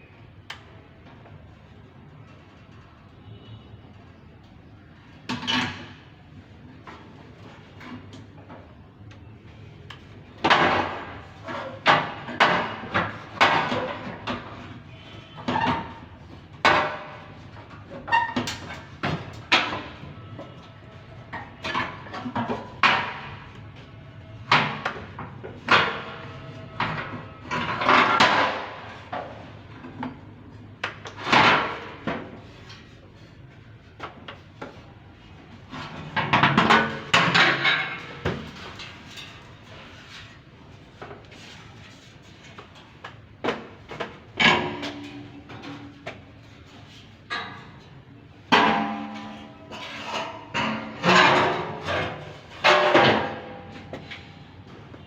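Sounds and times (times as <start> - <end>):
metal knocks and clanks: 42.6 - 54.8.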